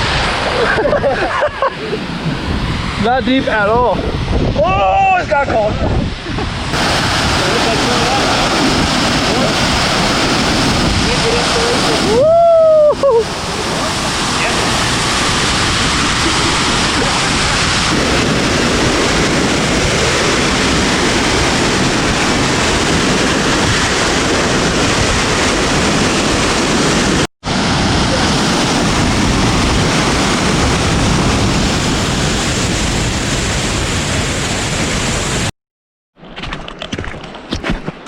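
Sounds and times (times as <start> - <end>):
waterfall rushing: 0.0 - 5.4, 6.1 - 35.5.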